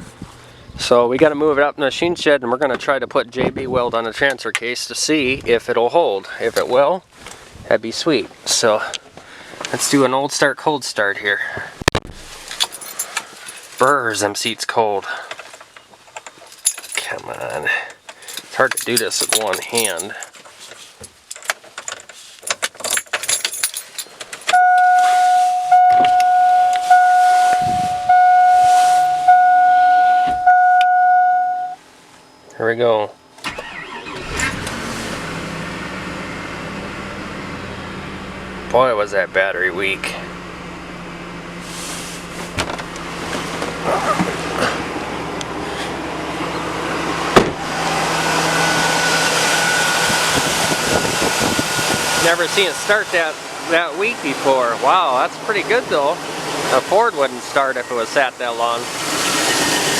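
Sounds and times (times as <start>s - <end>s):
keys jangling and clicking: 12.5s - 14.1s, 16.1s - 24.6s
car engine idling: 33.2s - 59.9s.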